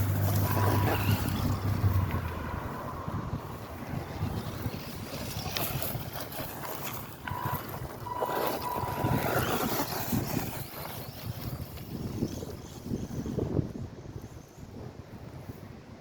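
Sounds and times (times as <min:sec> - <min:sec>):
wind buffeting microphone: 0:00.0 - 0:16.0
toy car motor and gears whirring: 0:04.6 - 0:14.7.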